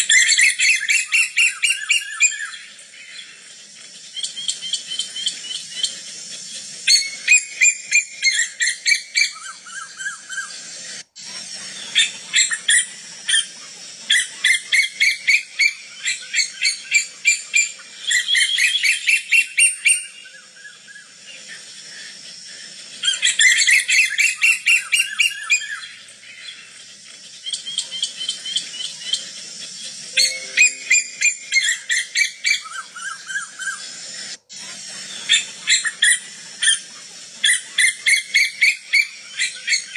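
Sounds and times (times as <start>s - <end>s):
koel calling shrill notes: 30.2s - 32.0s.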